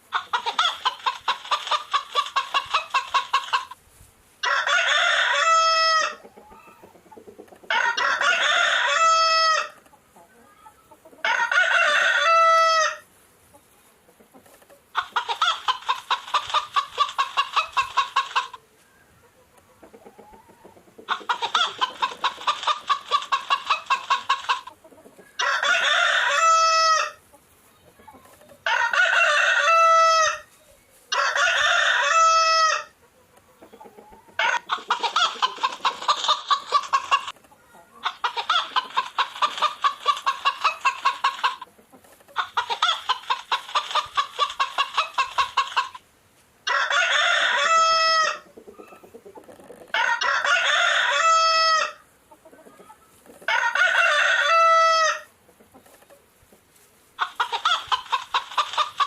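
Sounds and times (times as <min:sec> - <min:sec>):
chicken clucking: 0:00.0 - 0:03.8, 0:04.4 - 0:46.1, 0:46.7 - 0:59.0
rooster crowing: 0:04.4 - 0:06.2, 0:07.7 - 0:09.8, 0:11.2 - 0:13.0, 0:25.4 - 0:27.2, 0:28.6 - 0:30.5, 0:31.1 - 0:32.9, 0:46.6 - 0:48.4, 0:49.9 - 0:52.0, 0:53.5 - 0:55.3.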